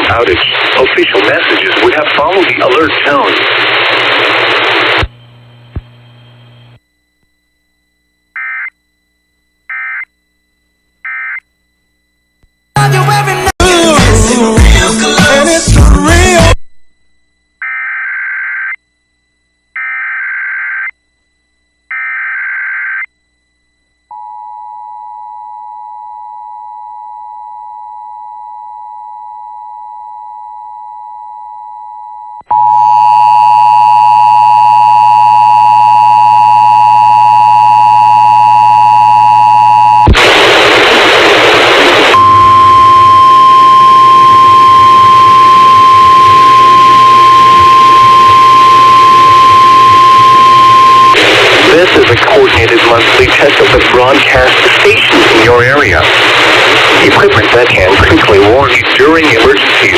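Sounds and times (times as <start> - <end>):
burst of static: 0.0 - 5.9, 40.0 - 59.9
hum: 0.0 - 59.9
screeching digital header: 42.2 - 59.9.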